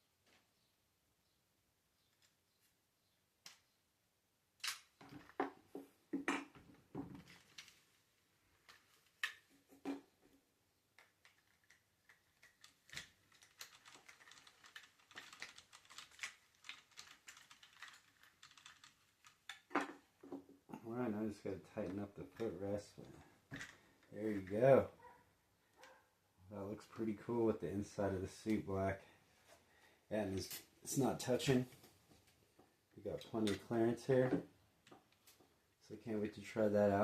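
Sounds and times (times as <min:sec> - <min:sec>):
plastic model parts clicking: 0:11.0 - 0:19.8.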